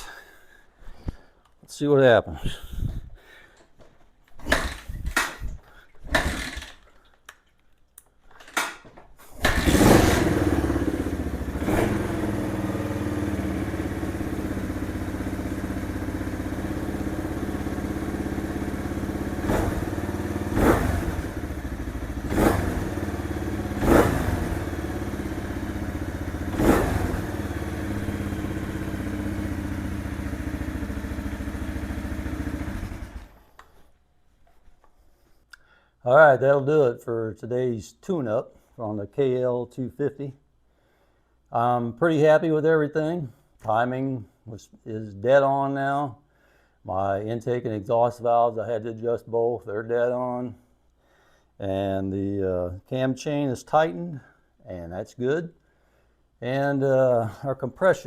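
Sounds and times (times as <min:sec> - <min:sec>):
motorcycle engine kick-started: 0:04.4 - 0:05.5, 0:06.1 - 0:06.8, 0:09.4 - 0:33.6
motorcycle engine idling: 0:10.0 - 0:33.4.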